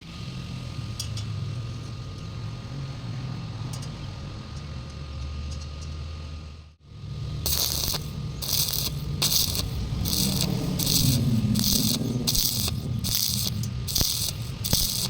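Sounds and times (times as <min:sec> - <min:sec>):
engine humming: 0:06.4 - 0:15.0.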